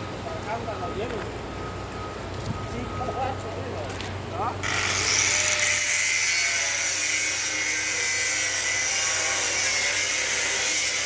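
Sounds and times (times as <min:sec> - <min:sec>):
power tool cutting metal pipe: 0:04.6 - 0:11.0.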